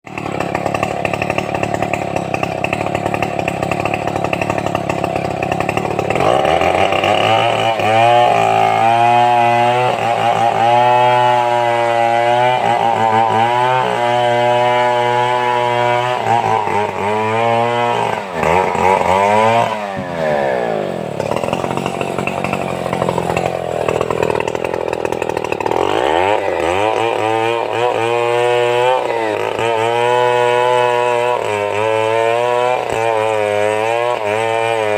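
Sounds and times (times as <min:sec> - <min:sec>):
chainsaw cutting timber: 0:00.0 - 0:34.9.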